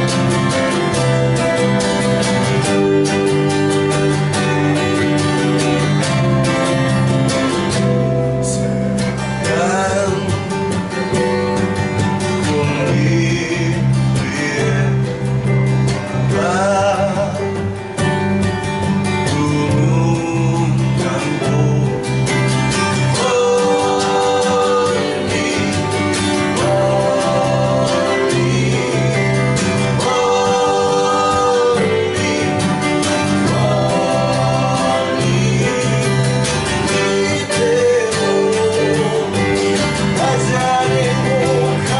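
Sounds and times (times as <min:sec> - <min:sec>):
strummed acoustic guitar: 0:00.0 - 0:41.9
person singing with vibrato: 0:08.3 - 0:10.9, 0:12.3 - 0:15.4, 0:16.1 - 0:17.8, 0:19.2 - 0:41.9.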